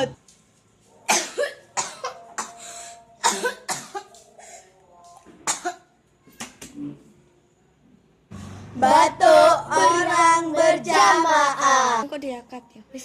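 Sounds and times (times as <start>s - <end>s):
person coughing: 3.2s - 4.6s.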